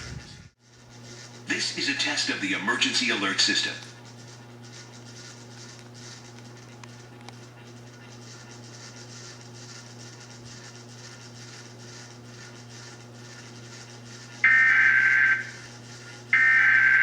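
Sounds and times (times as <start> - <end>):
low hum: 0.0 - 0.6.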